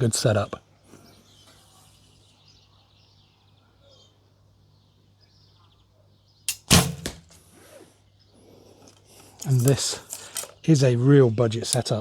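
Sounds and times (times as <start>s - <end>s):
bowstring snapping on release: 6.5s - 7.4s
sharp click: 6.5s - 7.4s.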